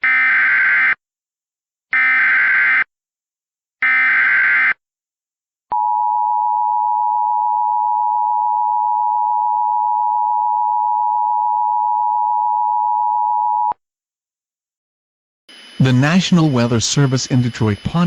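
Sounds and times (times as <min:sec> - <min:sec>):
steady alert tone: 0:15.5 - 0:18.0.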